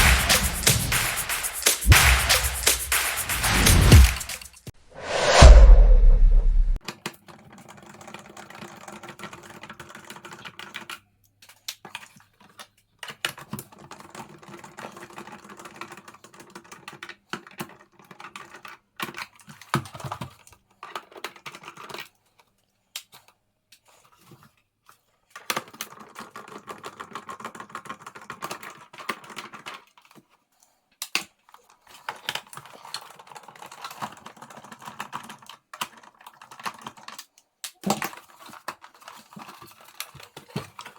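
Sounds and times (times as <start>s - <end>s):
clicking of plastic and metal parts: 7.3s - 24.4s, 25.3s - 40.9s.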